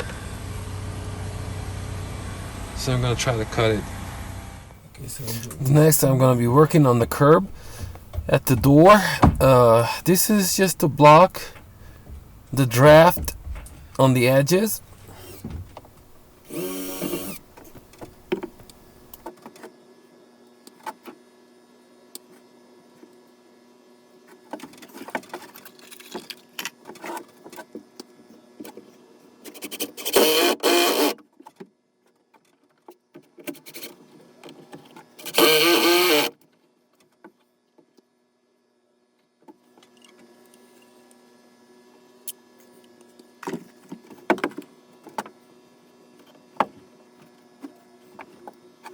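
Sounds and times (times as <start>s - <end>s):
faint steady hum: 4.8s - 19.3s
power tool bursts: 5.3s - 19.2s, 30.0s - 31.1s, 35.2s - 36.3s
knocks and clicks: 5.4s - 19.3s.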